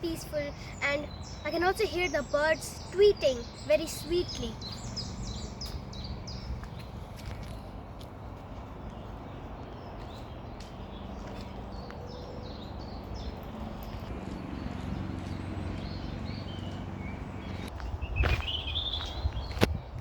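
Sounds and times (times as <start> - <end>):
small birds chirping: 0.0 - 20.0
footsteps on a path: 4.5 - 20.0.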